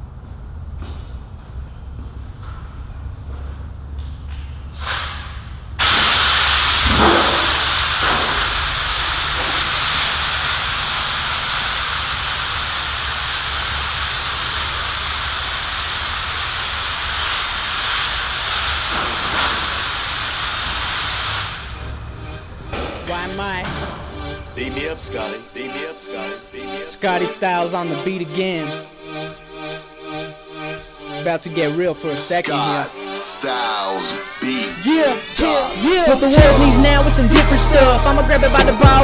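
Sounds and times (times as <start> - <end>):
welding arc hissing: 4.8 - 23.3, 34.2 - 39.0.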